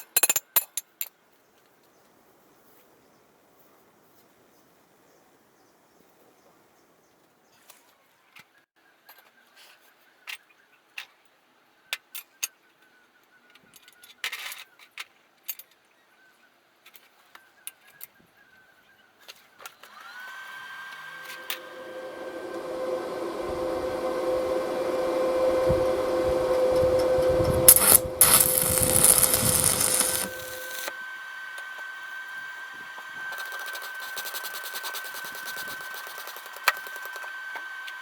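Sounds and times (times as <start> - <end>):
electric power tool whine: 19.7 - 38.0.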